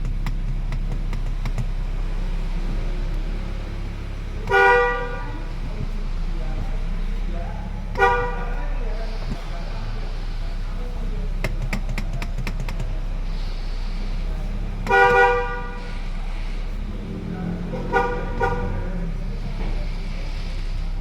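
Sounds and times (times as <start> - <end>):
car horn blasts: 2.8 - 9.3, 14.5 - 21.0.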